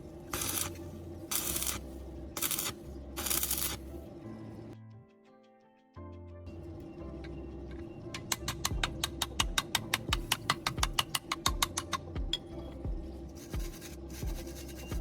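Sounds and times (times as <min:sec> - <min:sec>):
music with low beat: 0:00.2 - 0:05.0, 0:06.0 - 0:15.0
sharp scratchy clicks: 0:00.3 - 0:01.8, 0:02.4 - 0:03.9.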